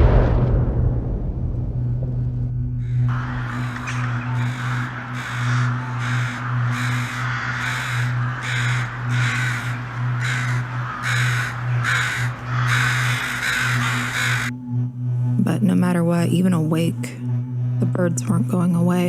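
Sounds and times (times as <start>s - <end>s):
steady low hum: 0.0s - 19.0s
crows cawing: 2.8s - 14.6s.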